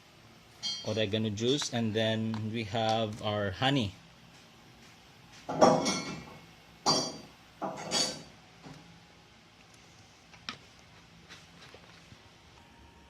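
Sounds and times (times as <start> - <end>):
kitchenware knocks and clinks: 5.5 - 8.3.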